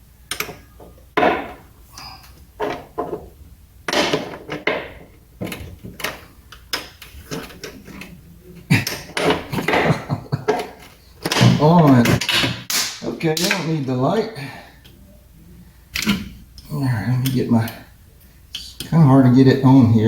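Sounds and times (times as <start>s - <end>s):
hand tools knocking and scraping: 0.3s - 12.7s.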